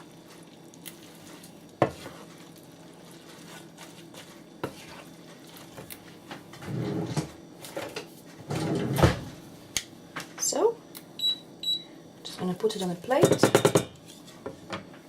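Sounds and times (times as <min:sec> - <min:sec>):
utensil clanking against a pan: 0:12.8 - 0:14.1.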